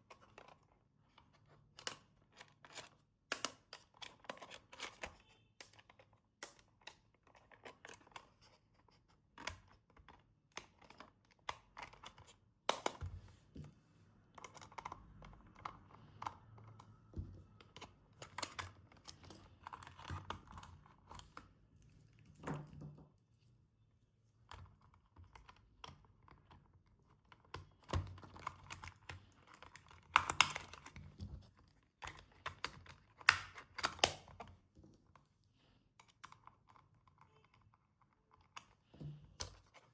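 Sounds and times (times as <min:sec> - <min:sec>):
plastic packaging clicks and taps: 0:09.4 - 0:13.7, 0:27.4 - 0:31.4, 0:32.0 - 0:34.6.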